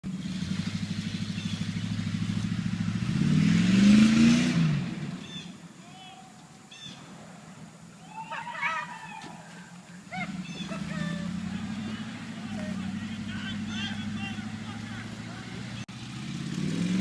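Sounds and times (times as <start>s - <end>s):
van engine revving: 0.0s - 5.5s, 10.1s - 17.0s.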